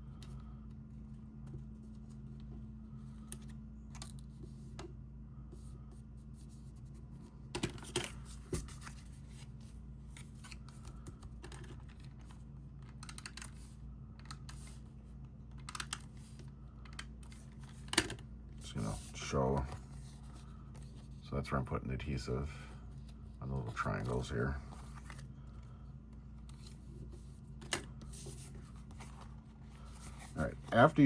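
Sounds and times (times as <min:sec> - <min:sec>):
steady low hum: 0:00.0 - 0:31.0
paper being handled: 0:26.4 - 0:31.0.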